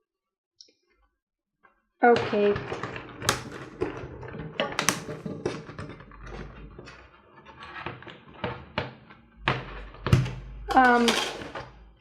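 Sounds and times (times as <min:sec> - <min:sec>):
packaging clicks and knocks: 0:02.3 - 0:06.8.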